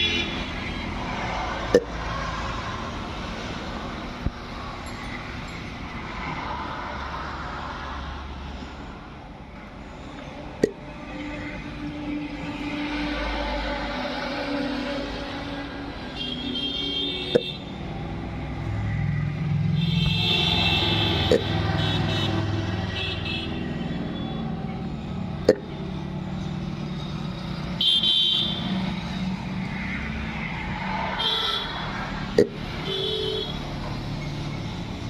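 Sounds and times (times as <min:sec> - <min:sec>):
car horns honking: 0:00.0 - 0:00.6, 0:14.4 - 0:17.8, 0:19.7 - 0:24.5, 0:27.7 - 0:28.8, 0:31.1 - 0:31.8, 0:32.4 - 0:33.6
road traffic: 0:00.0 - 0:35.0.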